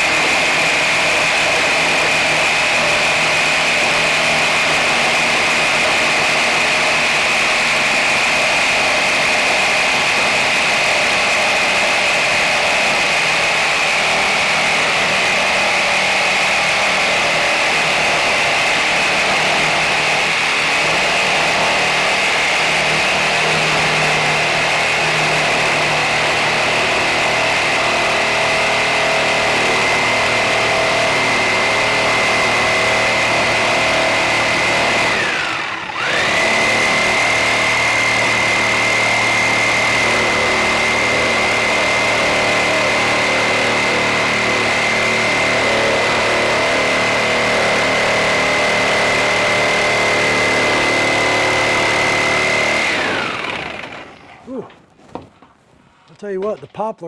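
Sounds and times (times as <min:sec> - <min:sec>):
electric power saw whining: 0:00.0 - 0:56.2.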